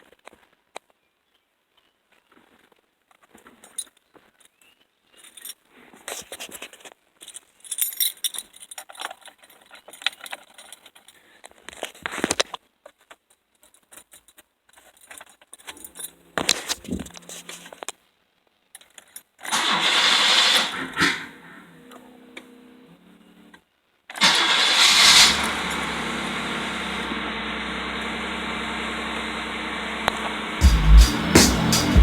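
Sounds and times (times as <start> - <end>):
car keys jangling: 15.7 - 17.6
low steady mechanical hum: 25.3 - 31.9.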